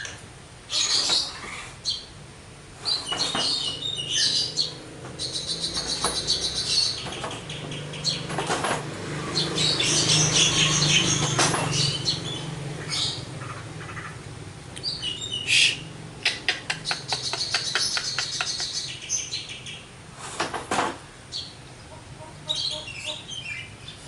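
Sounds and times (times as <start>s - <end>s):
bird singing chirps and whistles: 2.9s - 8.2s, 14.8s - 15.8s
bird clicking notes: 16.2s - 18.8s
harsh rasping bird call: 21.8s - 23.7s.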